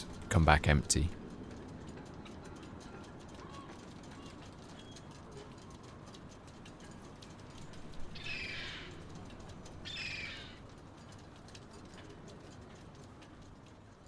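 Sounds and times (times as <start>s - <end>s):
low background noise: 0.0s - 3.3s.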